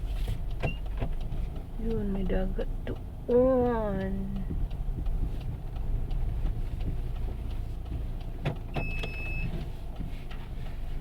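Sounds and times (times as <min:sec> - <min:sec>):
car engine and road rumble: 0:00.0 - 0:11.0
high beep: 0:08.8 - 0:09.5.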